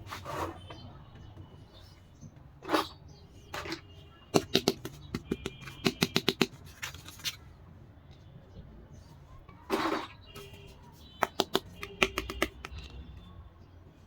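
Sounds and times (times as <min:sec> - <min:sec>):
plastic toy pieces clicking: 0:04.4 - 0:07.4, 0:11.2 - 0:13.0.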